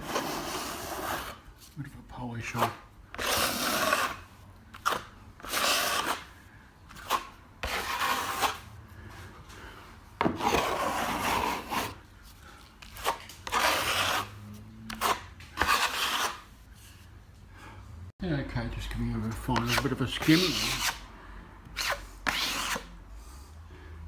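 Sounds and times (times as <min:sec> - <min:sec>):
trowel scraping plaster: 0:00.0 - 0:01.5, 0:02.5 - 0:08.7, 0:10.2 - 0:12.0, 0:12.6 - 0:16.6, 0:19.5 - 0:21.0, 0:21.7 - 0:23.0.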